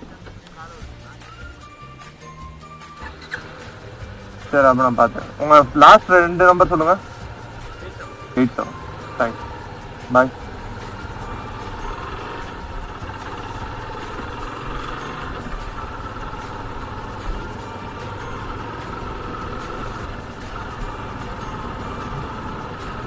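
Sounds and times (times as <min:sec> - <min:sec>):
motorcycle engine running: 0:00.0 - 0:23.0
road noise: 0:00.0 - 0:23.0.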